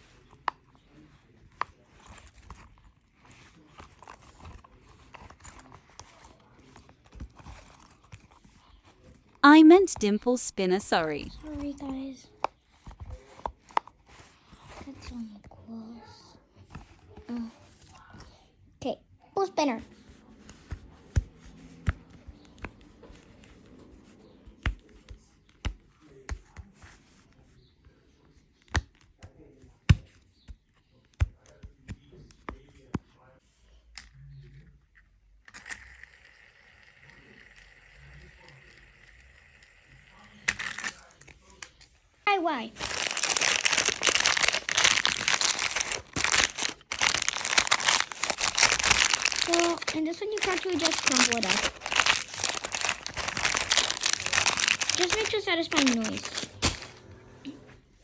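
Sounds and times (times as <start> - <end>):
fidget spinner whirring: 35.5 - 40.6
plastic rattling: 42.8 - 57.0.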